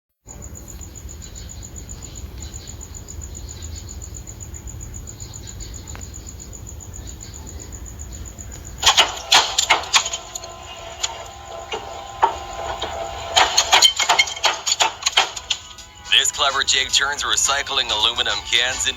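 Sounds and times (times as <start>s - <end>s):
sharp metallic clanks and clicks: 8.8s - 16.3s.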